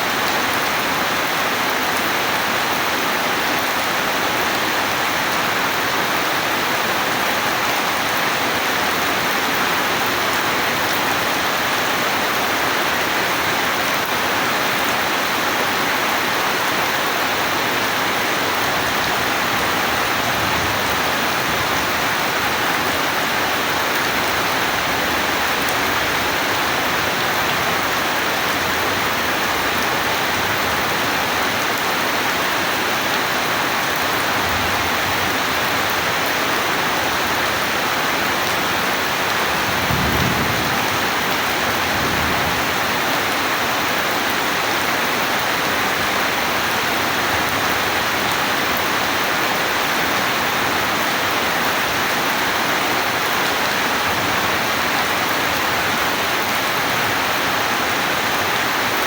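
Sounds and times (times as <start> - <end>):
heavy rain falling: 0.0 - 59.0
thunder rumbling: 39.2 - 43.4.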